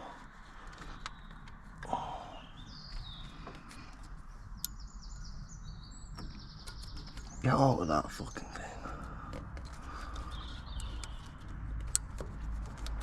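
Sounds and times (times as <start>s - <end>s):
birds chirping: 0.0s - 13.0s
clicks and knocks of handling: 0.5s - 1.9s, 6.1s - 7.5s, 8.9s - 13.0s.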